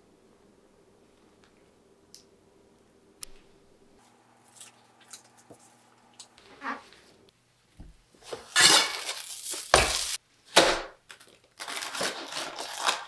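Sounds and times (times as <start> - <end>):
crisp shell crunching: 11.2 - 13.0.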